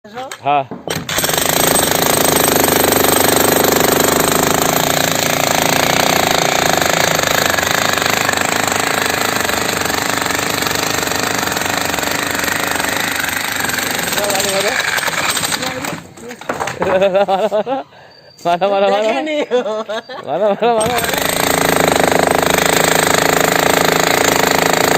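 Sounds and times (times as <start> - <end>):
jackhammer hammering concrete: 0.9 - 16.0, 20.8 - 24.9.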